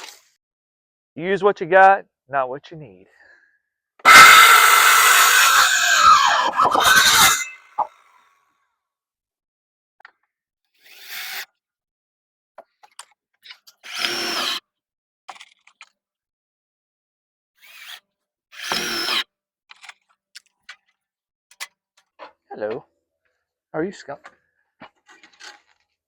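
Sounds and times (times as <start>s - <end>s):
power drill driving screws: 4.0s - 7.9s, 13.8s - 14.6s, 17.6s - 18.0s, 18.6s - 19.2s.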